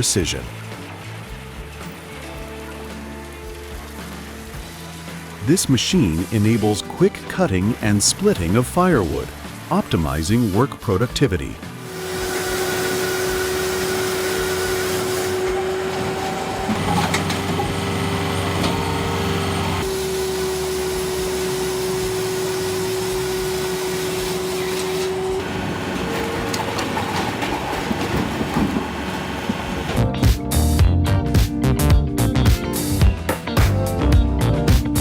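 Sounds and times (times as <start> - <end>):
saw-splitter humming and whining: 11.7 - 30.0
music with a beat: 30.0 - 35.0.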